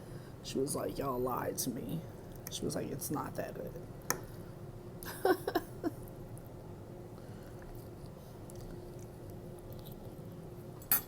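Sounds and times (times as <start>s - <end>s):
faint steady hum: 0.0s - 11.0s
soft chewing of food: 6.0s - 10.8s.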